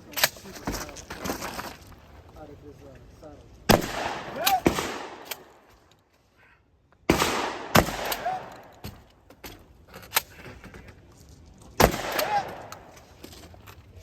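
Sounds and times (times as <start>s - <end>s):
shotgun shots: 3.7s - 5.6s, 7.1s - 8.8s, 11.8s - 12.9s.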